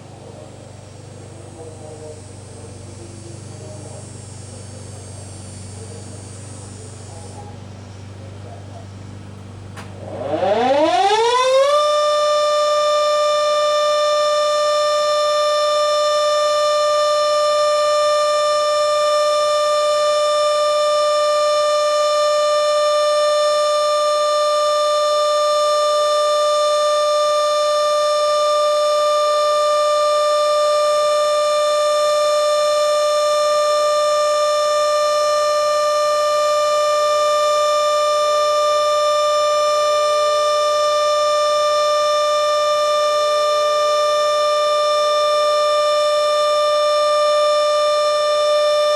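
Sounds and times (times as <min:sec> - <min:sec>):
electric warning siren wailing: 0:09.8 - 0:48.9.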